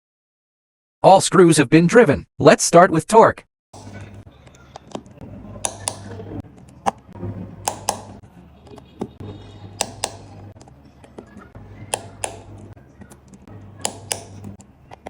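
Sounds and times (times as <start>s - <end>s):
torque screwdriver clicking: 5.6s - 6.2s, 7.6s - 8.2s, 9.8s - 10.4s, 11.9s - 12.7s, 13.3s - 14.7s.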